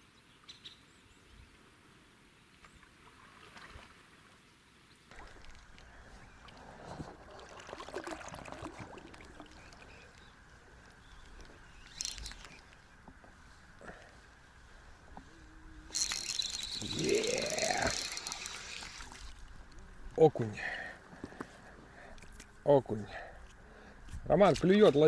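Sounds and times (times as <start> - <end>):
water splashing: 2.6 - 4.4, 5.1 - 10.2, 15.9 - 19.8.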